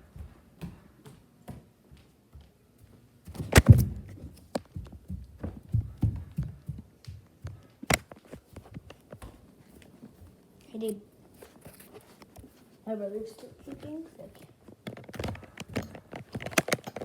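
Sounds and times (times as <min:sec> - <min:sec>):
thumps and knocks of objects handled: 0:03.3 - 0:09.4, 0:14.6 - 0:17.0.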